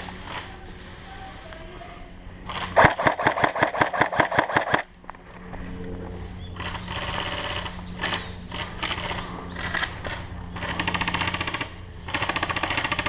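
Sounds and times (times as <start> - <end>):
airsoft guns firing: 2.5 - 4.9.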